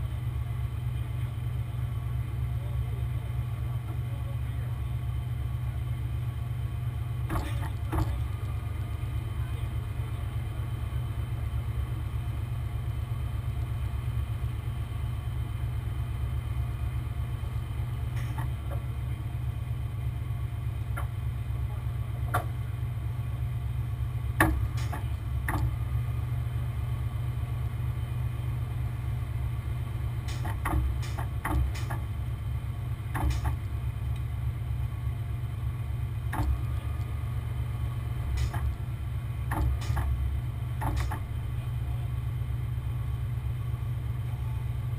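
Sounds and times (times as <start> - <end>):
truck engine idling: 0.0 - 44.9
knocks and clanks: 7.3 - 8.3, 24.4 - 25.8, 30.3 - 32.1, 33.1 - 33.7, 38.3 - 38.8, 39.4 - 40.2, 40.8 - 41.4.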